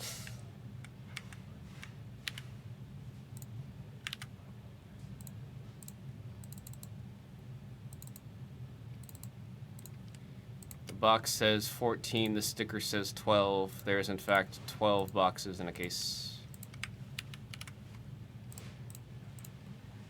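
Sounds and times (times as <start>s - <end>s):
low steady hum: 0.0s - 20.0s
keyboard typing: 2.2s - 2.5s, 3.4s - 4.3s, 5.2s - 6.9s, 9.0s - 10.8s, 16.5s - 17.8s.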